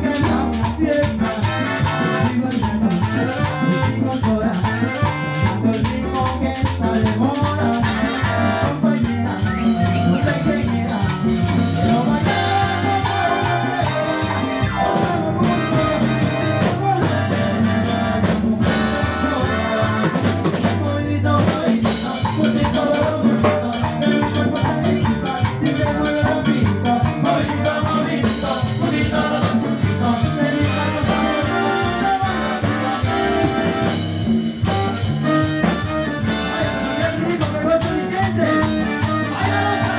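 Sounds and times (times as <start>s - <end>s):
trumpets: 0.0s - 6.0s, 7.7s - 21.0s, 28.4s - 39.9s
person singing: 0.0s - 33.9s, 34.7s - 39.9s
salsa dance band playing: 0.0s - 39.9s.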